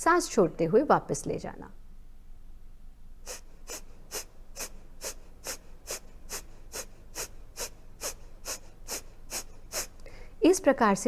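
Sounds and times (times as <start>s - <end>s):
rapid forceful exhalations: 3.2s - 10.4s.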